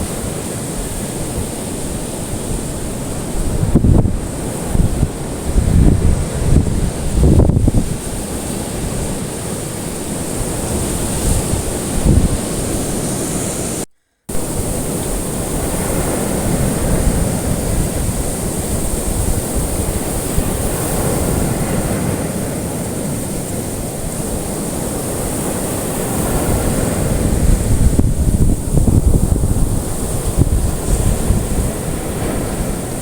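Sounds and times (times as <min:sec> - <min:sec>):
ocean waves surf: 0:00.0 - 0:33.0.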